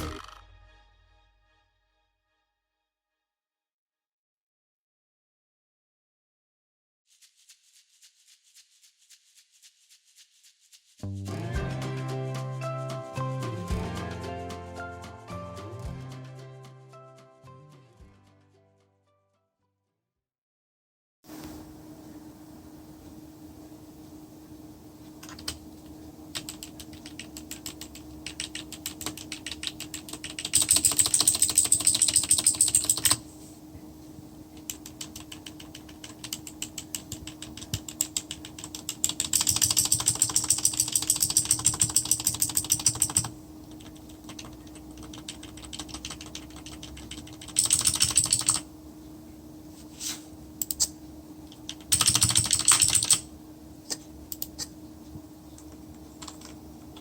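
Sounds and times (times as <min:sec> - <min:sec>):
faint steady hum: 0:21.3 - 0:57.0
mechanical keyboard typing: 0:25.2 - 0:25.6, 0:26.3 - 0:33.2, 0:34.7 - 0:48.7, 0:51.5 - 0:53.3, 0:56.2 - 0:57.0.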